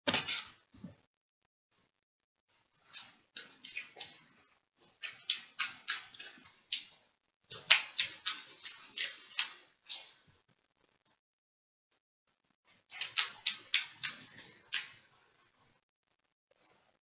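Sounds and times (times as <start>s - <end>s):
cards being shuffled: 2.8s - 10.2s, 12.9s - 15.1s.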